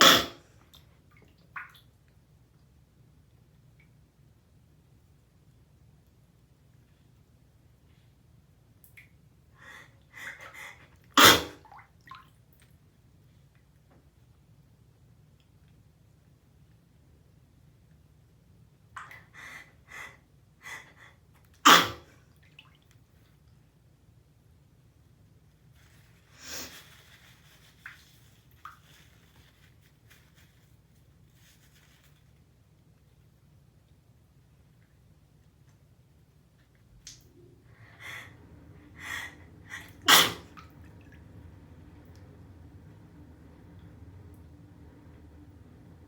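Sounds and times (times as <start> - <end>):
person sneezing: 0.0 - 0.4, 11.2 - 11.6, 21.7 - 22.1, 39.0 - 40.6
breathy build-up before sneeze: 9.6 - 11.7, 19.0 - 22.2, 26.4 - 26.8, 37.6 - 40.7
woman sniffing: 26.4 - 26.8.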